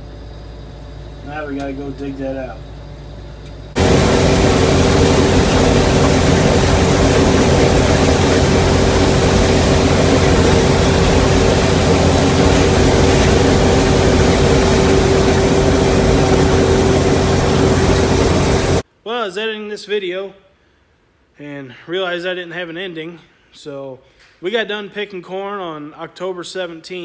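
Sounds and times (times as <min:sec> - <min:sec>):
steady hum: 0:02.6 - 0:18.8
combine harvester running: 0:02.9 - 0:18.8.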